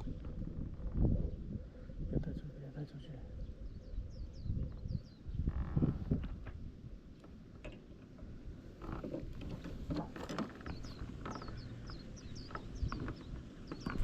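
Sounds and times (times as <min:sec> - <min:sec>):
bird chirping: 0:00.0 - 0:06.2, 0:09.4 - 0:14.0
wind rumbling: 0:00.0 - 0:14.0
microphone handling noise: 0:04.4 - 0:06.7.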